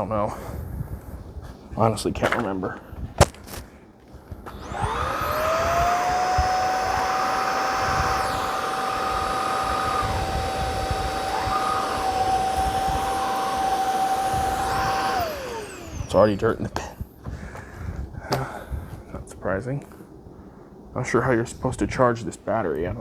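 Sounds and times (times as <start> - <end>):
stick vacuum motor whining: 4.3 - 17.0.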